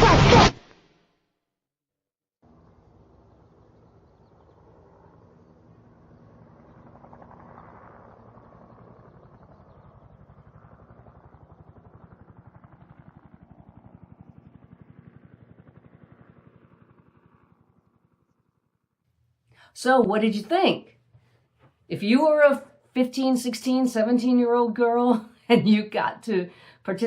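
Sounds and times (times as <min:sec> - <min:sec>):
helicopter rotor chopping: 0:02.5 - 0:18.4.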